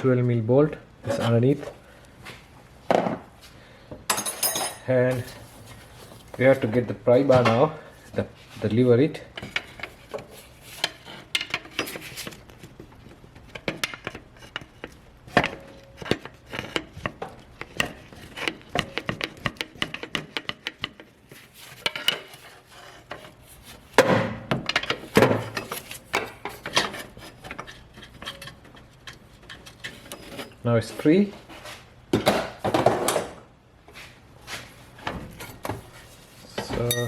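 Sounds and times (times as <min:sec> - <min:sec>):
metal clinks and knocks: 0:04.1 - 0:04.9, 0:36.8 - 0:37.0.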